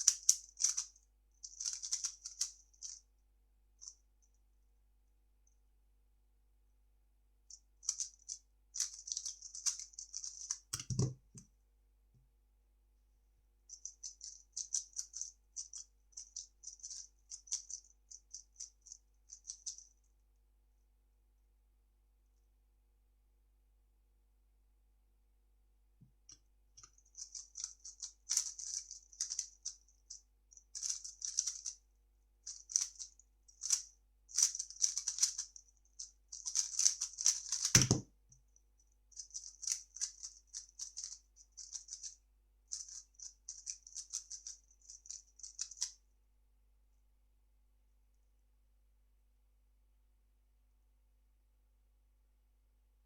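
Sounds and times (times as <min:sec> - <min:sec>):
puzzle cube plastic clicking: 0:08.8 - 0:11.2, 0:34.4 - 0:35.5, 0:36.4 - 0:38.0.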